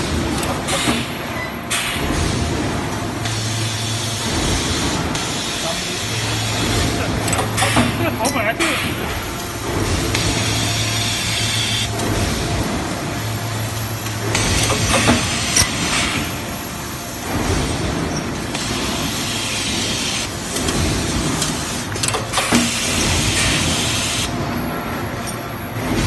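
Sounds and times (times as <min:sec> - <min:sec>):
machine low hum: 0:00.0 - 0:26.0
welding press clacks: 0:04.1 - 0:11.0, 0:17.2 - 0:24.2.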